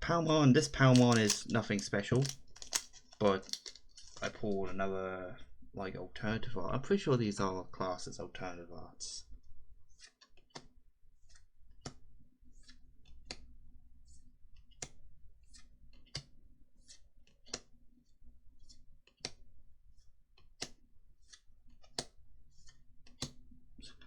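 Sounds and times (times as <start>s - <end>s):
trading cards snapping: 0.8s - 4.4s
cards sliding softly: 0.8s - 4.5s.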